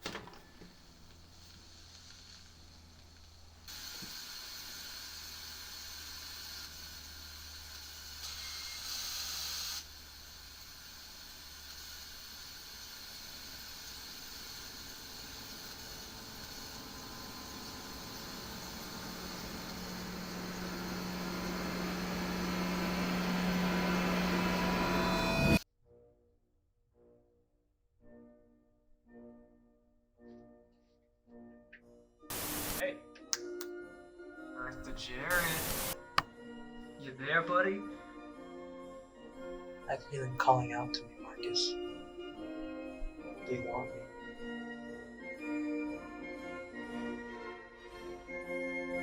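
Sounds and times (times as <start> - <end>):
steady hiss: 0.0 - 24.8, 32.3 - 32.8, 34.7 - 36.1
low hum: 15.3 - 25.6.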